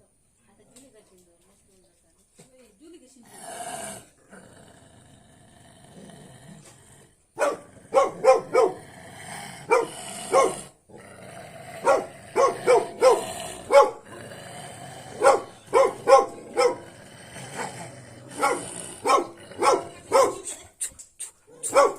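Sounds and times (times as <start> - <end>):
dog barking: 7.4 - 8.8, 9.6 - 10.7, 11.8 - 14.0, 15.2 - 16.8, 18.4 - 20.5, 21.6 - 21.9.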